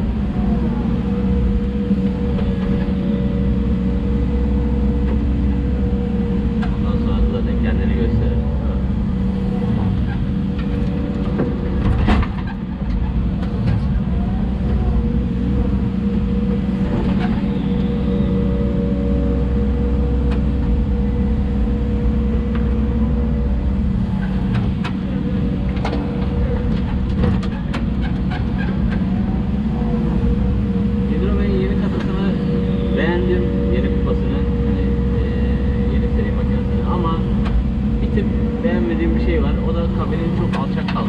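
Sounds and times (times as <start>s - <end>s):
excavator diesel engine running: 0.0s - 41.0s
sharp clicks and knocks: 24.2s - 25.1s, 25.7s - 29.1s.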